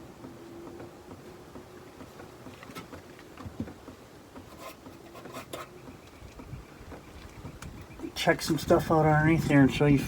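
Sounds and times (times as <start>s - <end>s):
faint scraping and rubbing: 4.5s - 5.8s.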